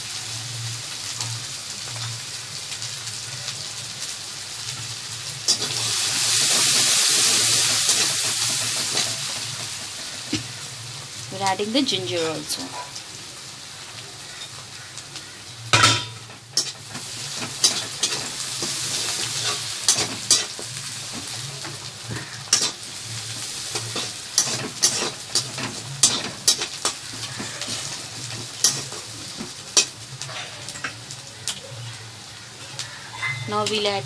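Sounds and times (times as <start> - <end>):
food sizzling in oil: 0.0 - 34.0
utensil scraping against pan: 16.6 - 21.2, 22.1 - 30.8.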